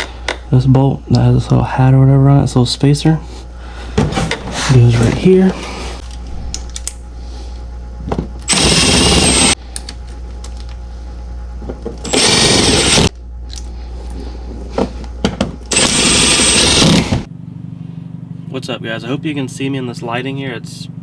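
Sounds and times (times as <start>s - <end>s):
power drill whining: 8.4s - 9.6s, 12.0s - 13.1s, 15.7s - 17.3s.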